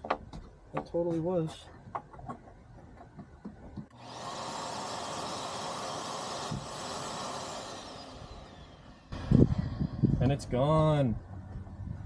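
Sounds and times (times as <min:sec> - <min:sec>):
vacuum cleaner running: 0:04.0 - 0:09.4.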